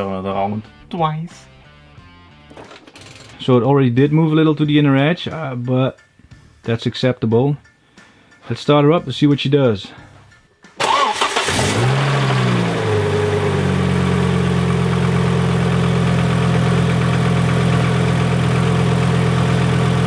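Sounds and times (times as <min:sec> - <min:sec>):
car engine starting and idling: 0:10.8 - 0:20.0.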